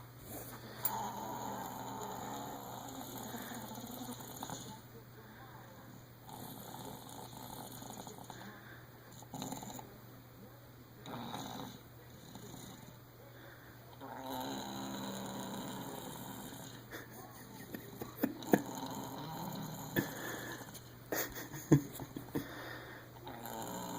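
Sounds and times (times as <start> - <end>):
baby snoring congested: 0.8 - 4.8, 6.3 - 8.6, 11.0 - 12.9, 14.0 - 16.8, 18.4 - 20.7, 22.8 - 23.9.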